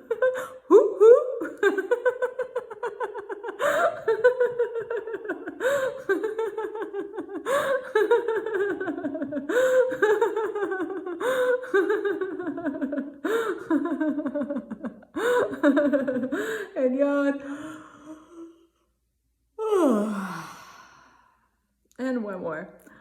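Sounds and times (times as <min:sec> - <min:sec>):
woman laughing: 0:00.0 - 0:16.8.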